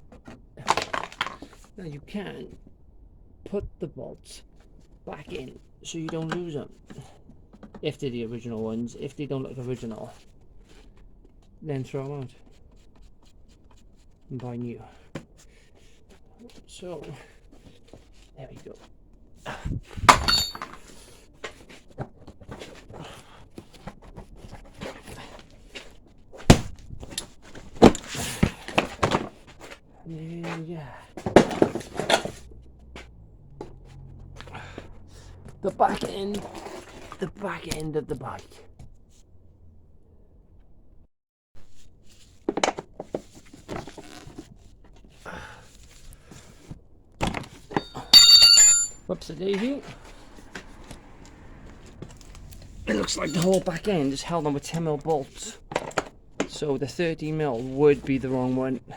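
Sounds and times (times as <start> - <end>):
metal clink: 20.1 - 20.8, 47.7 - 49.0, 52.9 - 53.7
metal parts clunking: 20.1 - 20.8, 47.7 - 49.0, 52.9 - 53.7.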